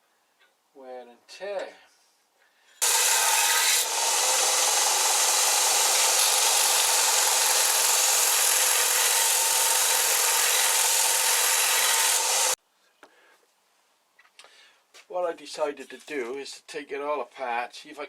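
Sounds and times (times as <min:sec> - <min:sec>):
belt sander whirring: 0:02.8 - 0:12.6.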